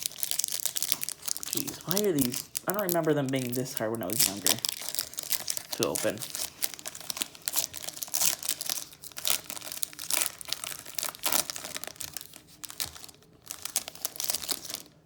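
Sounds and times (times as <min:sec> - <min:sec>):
foil wrapper crinkling and tearing: 0:00.0 - 0:15.0.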